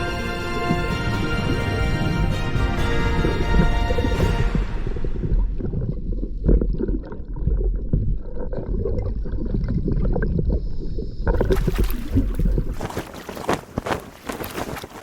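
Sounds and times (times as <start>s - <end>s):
water sloshing: 0.0s - 15.0s.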